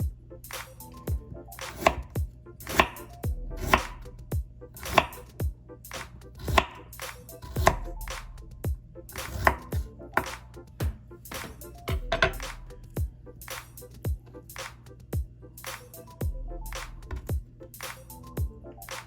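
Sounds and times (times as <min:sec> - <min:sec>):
knife chopping on cutting board: 0:01.6 - 0:04.0, 0:04.8 - 0:05.3, 0:06.0 - 0:06.8, 0:07.4 - 0:07.9, 0:09.1 - 0:12.6, 0:16.8 - 0:17.3.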